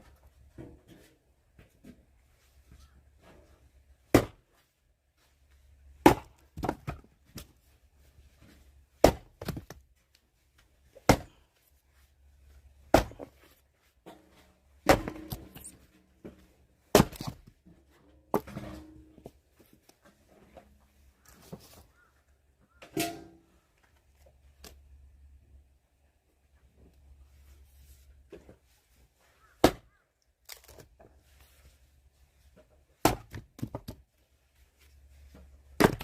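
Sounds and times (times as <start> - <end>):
axe chopping firewood: 4.1 - 4.5, 6.0 - 7.5, 9.0 - 9.8, 11.0 - 11.4, 12.9 - 13.4, 14.8 - 15.8, 16.9 - 17.5, 29.6 - 29.9, 33.0 - 34.0, 35.8 - 36.0.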